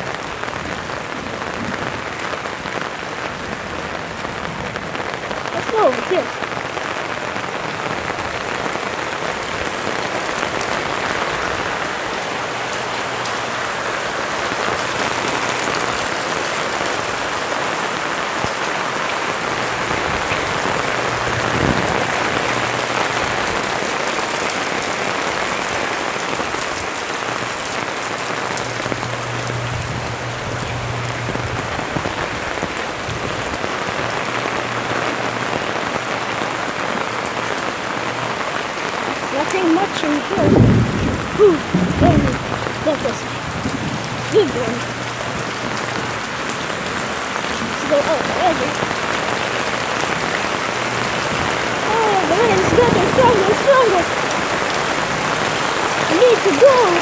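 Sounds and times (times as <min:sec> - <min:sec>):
rain splashing on surfaces: 0:00.0 - 0:57.0
low hum: 0:28.5 - 0:32.0.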